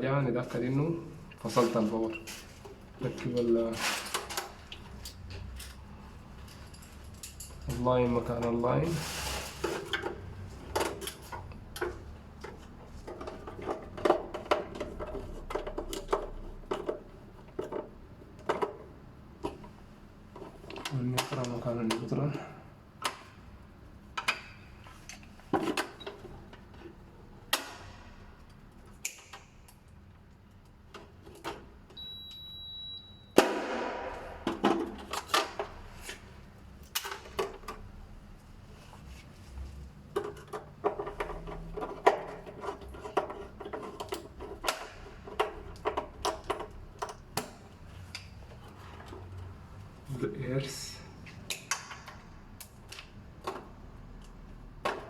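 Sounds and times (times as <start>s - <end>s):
high-pitched beep: 32.0s - 33.4s.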